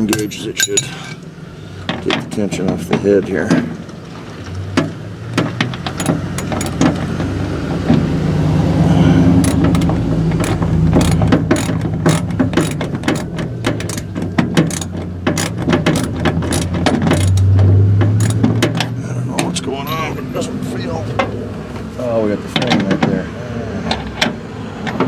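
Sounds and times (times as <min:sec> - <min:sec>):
ratchet wrench clicking: 0:05.9 - 0:06.8, 0:09.4 - 0:17.5, 0:18.2 - 0:18.4.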